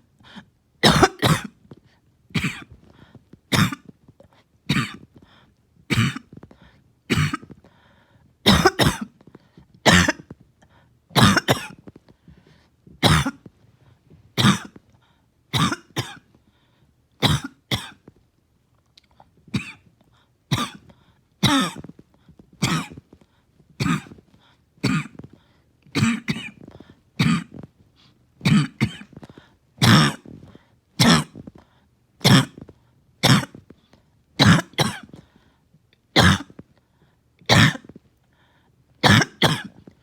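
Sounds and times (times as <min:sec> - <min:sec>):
person coughing: 0:00.8 - 0:01.6, 0:02.4 - 0:02.8, 0:03.5 - 0:03.9, 0:04.7 - 0:05.1, 0:05.9 - 0:06.4, 0:07.1 - 0:07.6, 0:08.5 - 0:09.1, 0:09.8 - 0:10.3, 0:11.2 - 0:11.8, 0:13.0 - 0:13.5, 0:14.4 - 0:14.8, 0:15.5 - 0:16.2, 0:17.2 - 0:18.1, 0:20.5 - 0:22.0, 0:22.6 - 0:23.0, 0:23.8 - 0:24.2, 0:24.8 - 0:25.3, 0:25.9 - 0:27.7, 0:28.4 - 0:30.4, 0:31.0 - 0:31.5, 0:32.2 - 0:33.6, 0:34.4 - 0:35.2, 0:36.2 - 0:36.6, 0:37.5 - 0:37.9, 0:39.0 - 0:39.9.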